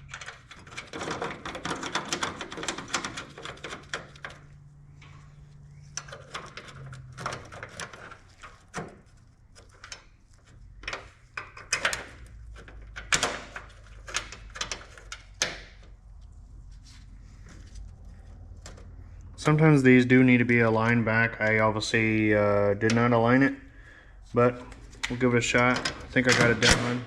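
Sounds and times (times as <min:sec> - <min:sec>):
tools clicking on metal latch: 0:10.8 - 0:15.8.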